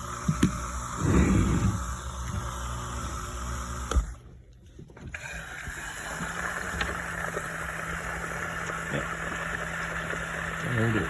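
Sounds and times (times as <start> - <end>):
motor hum: 0.0 - 11.0.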